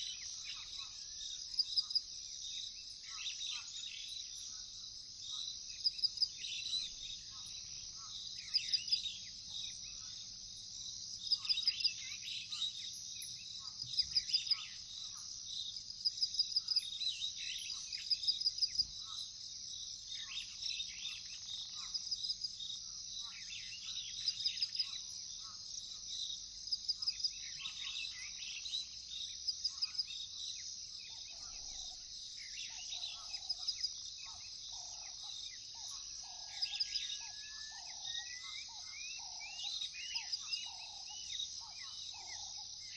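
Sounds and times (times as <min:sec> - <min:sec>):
crickets and insects trilling: 0:00.0 - 0:42.9
bird calls: 0:31.1 - 0:42.9.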